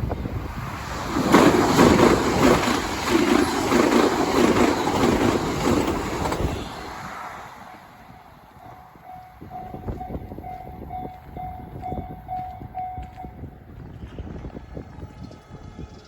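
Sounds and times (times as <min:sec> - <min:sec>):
train passing at speed: 0:00.0 - 0:16.0.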